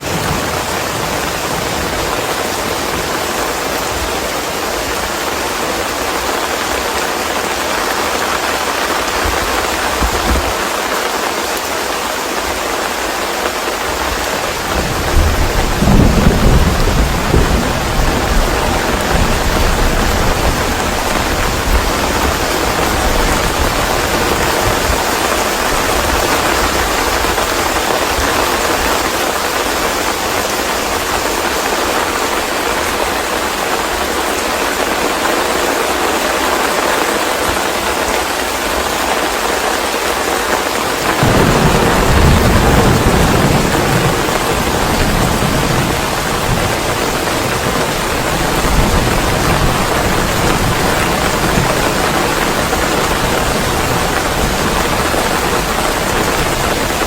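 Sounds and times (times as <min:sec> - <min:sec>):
heavy rain hissing: 0:00.0 - 0:57.0
thunder rumble: 0:14.2 - 0:29.2, 0:41.2 - 0:57.0.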